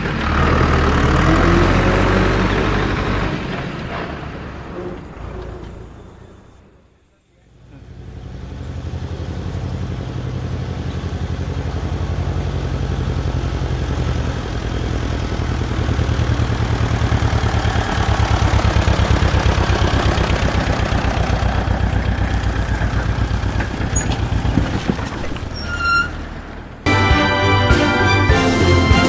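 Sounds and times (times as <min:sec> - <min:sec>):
engine running with rapid chug: 0:07.7 - 0:25.6.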